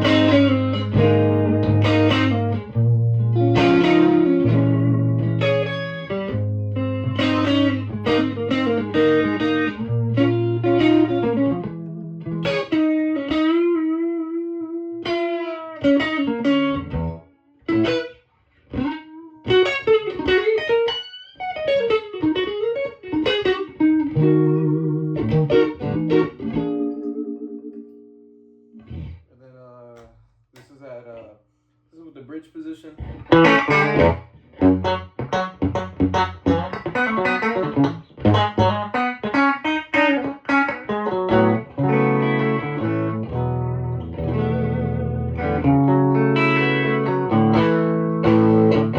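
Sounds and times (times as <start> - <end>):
electric guitar playing: 0.0 - 29.2, 33.0 - 48.9.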